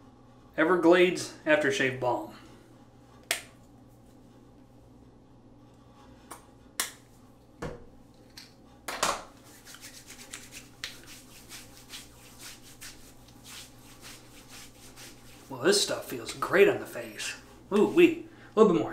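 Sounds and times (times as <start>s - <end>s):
hands rubbing: 9.4s - 18.2s.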